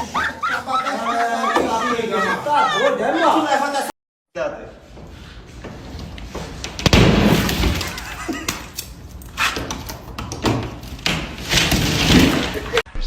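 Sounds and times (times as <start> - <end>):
loud crash: 6.8 - 8.1.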